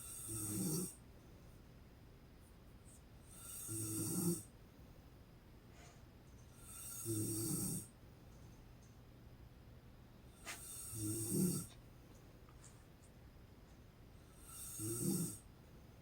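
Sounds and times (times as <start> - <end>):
woman snoring: 0.0 - 1.0, 3.3 - 4.5, 6.6 - 7.9, 10.6 - 11.7, 14.3 - 15.4
quiet breathing: 5.6 - 8.0, 10.3 - 13.2, 13.8 - 16.0.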